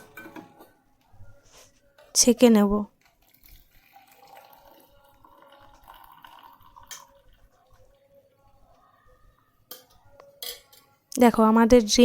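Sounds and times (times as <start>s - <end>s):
liquid trickling into a glass: 3.0s - 8.2s.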